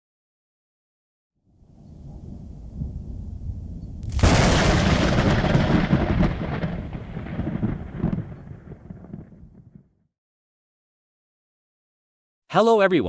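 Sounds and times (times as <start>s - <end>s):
thunder rumble and crack: 1.9s - 10.0s.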